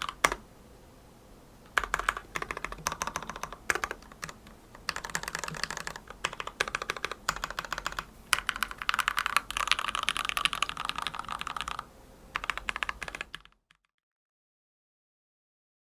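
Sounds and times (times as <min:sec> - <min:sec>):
mechanical keyboard typing: 0:00.0 - 0:00.4, 0:01.7 - 0:13.8.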